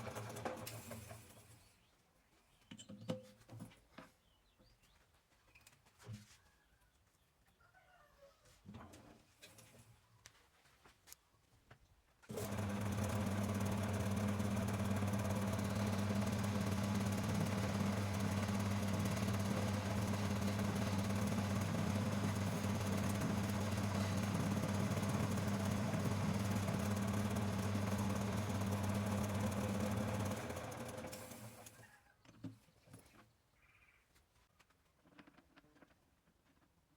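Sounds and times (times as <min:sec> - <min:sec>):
lathe motor low hum: 0:12.3 - 0:31.7.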